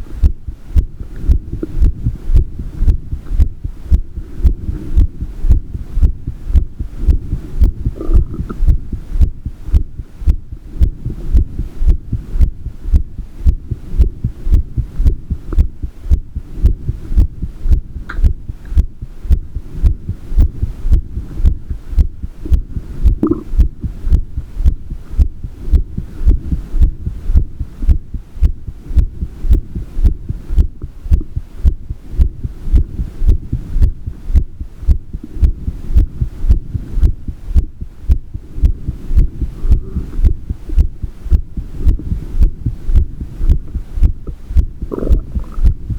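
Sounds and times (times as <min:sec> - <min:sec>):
heartbeat thumping: 0:00.0 - 0:45.9
low hum: 0:00.0 - 0:45.9.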